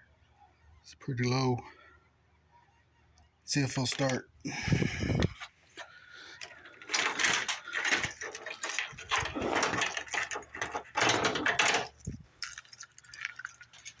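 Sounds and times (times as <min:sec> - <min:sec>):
car starter cranking: 0:06.4 - 0:14.0.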